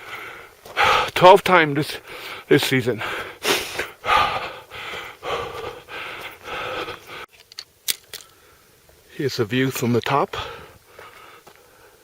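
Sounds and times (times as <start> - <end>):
person panting: 0.0 - 1.2, 1.9 - 7.3, 10.3 - 12.0.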